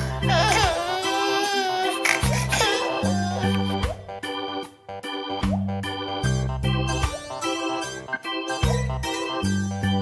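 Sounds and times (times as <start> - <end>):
baby crying: 0.0 - 3.8
keyboard music: 0.0 - 10.0.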